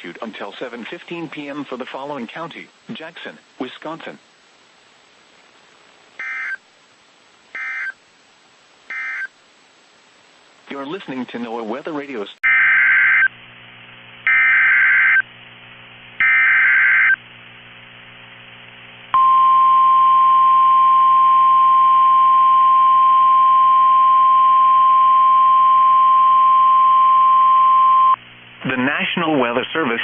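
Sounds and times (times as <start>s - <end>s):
coded data bursts: 6.2s - 6.6s
steady alarm tone: 6.2s - 6.6s, 7.6s - 8.0s.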